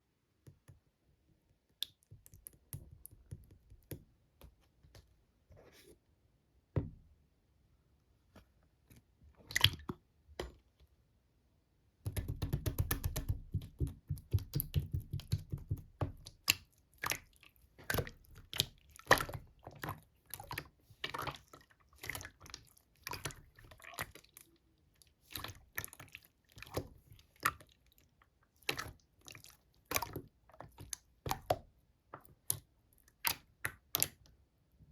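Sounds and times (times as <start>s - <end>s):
slime squelching by hand: 12.1s - 34.3s.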